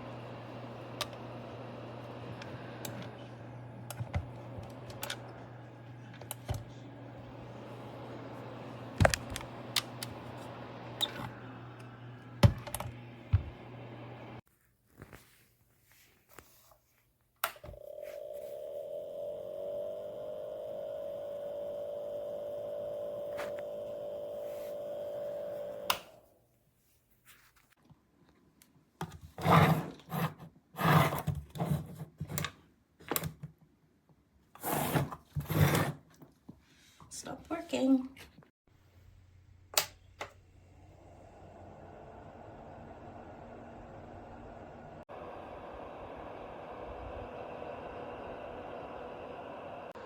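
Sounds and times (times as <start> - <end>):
heater fan humming: 0.0 - 14.4, 17.7 - 26.4, 38.9 - 50.0
heater switch click: 9.0 - 13.0, 22.6 - 26.2.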